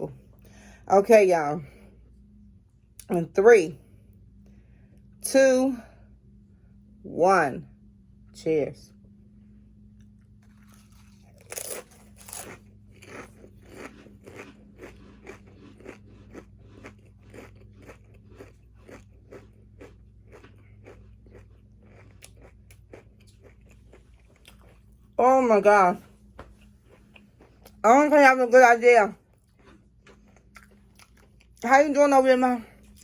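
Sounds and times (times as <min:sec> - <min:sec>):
chewing crunches: 0:10.0 - 0:25.2, 0:26.5 - 0:27.8, 0:29.2 - 0:31.7
potato chips crunching: 0:10.3 - 0:25.0, 0:29.3 - 0:31.7.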